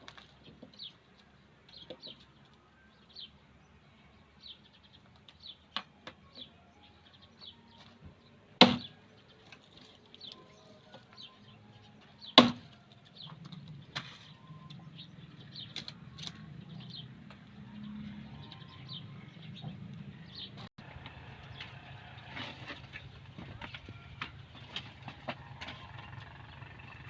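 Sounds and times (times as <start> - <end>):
low engine rumble: 12.9 - 27.0.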